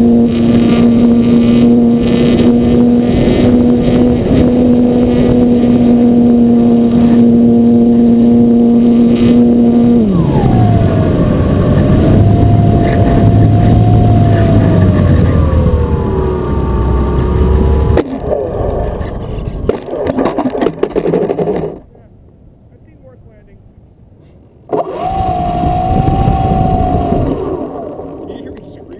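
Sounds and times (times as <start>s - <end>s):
model airplane electric motor: 0.0s - 17.9s, 24.7s - 28.9s
wind rushing: 0.0s - 18.0s, 24.7s - 28.9s.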